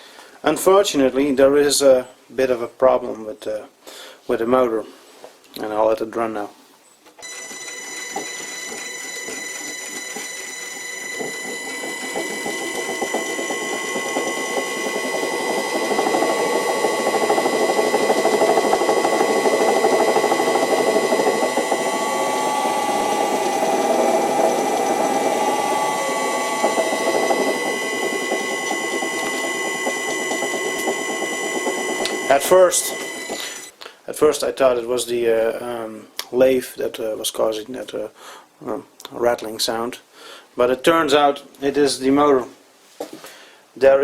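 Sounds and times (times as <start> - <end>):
lathe motor whining: 7.2 - 33.7
motor axle rattling: 7.2 - 33.7.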